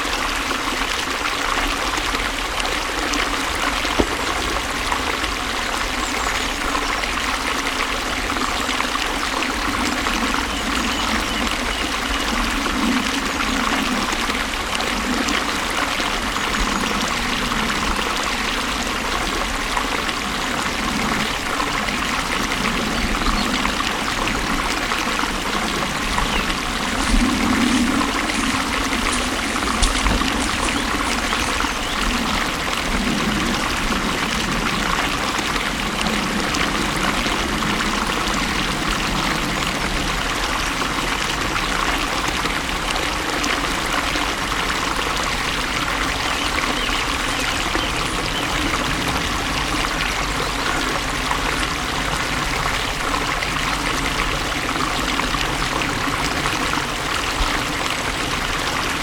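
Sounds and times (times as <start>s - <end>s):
water gurgles: 0.0s - 59.0s
water rushing and trickling: 0.0s - 59.0s.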